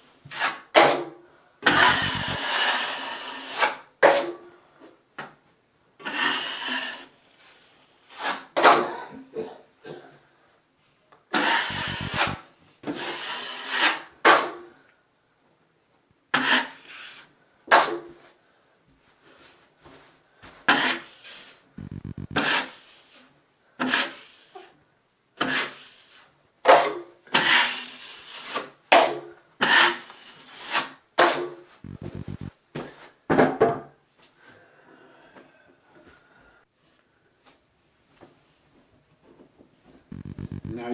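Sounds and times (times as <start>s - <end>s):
drywall knife scraping compound: 0.2s - 4.4s, 6.0s - 8.9s, 11.3s - 14.6s, 16.3s - 18.2s, 20.5s - 21.7s, 22.4s - 24.8s, 25.4s - 31.6s.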